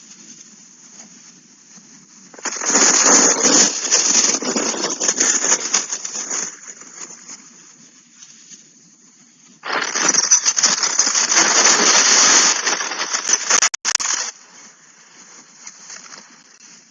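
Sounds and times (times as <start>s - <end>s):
loud hiss-like noise burst: 2.2s - 6.8s, 9.6s - 15.3s.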